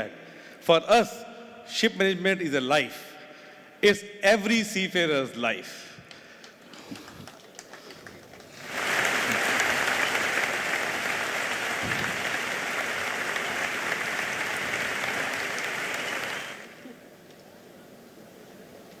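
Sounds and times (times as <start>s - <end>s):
audience applauding: 6.9s - 17.0s.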